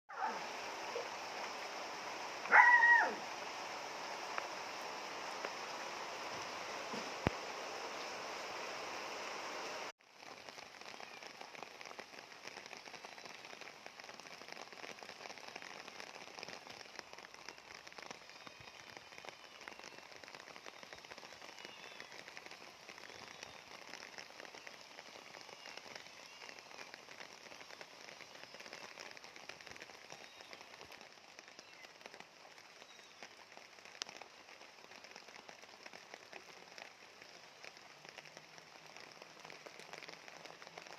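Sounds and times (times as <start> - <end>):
steady rain falling: 0.1 - 40.9
faint short high calls: 2.4 - 3.2.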